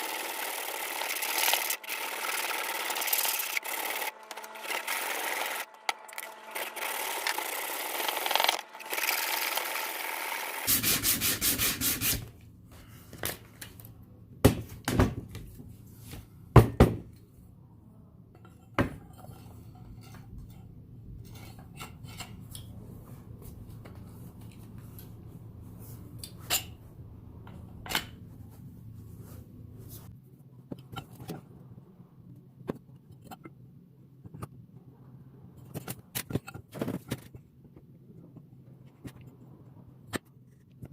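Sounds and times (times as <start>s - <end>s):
abrasive rubbing like sanding: 10.6s - 12.3s
low steady hum: 10.7s - 40.9s.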